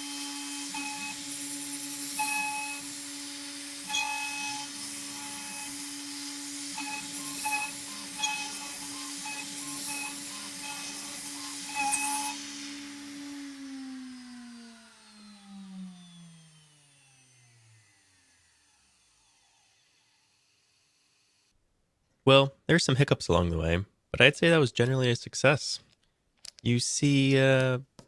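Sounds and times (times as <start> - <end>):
cnc spindle whine: 0.0 - 20.4
hiss of cutting noise: 0.0 - 21.4.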